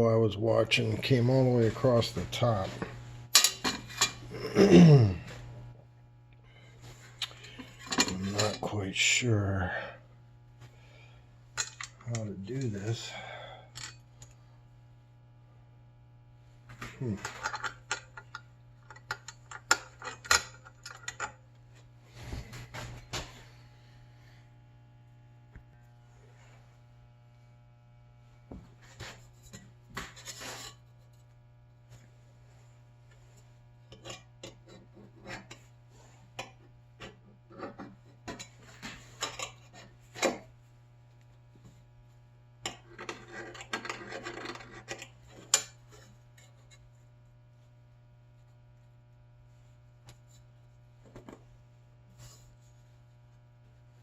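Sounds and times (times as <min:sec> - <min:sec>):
steady low hum: 0:00.0 - 0:54.0
rubbing and scraping: 0:28.8 - 0:30.9.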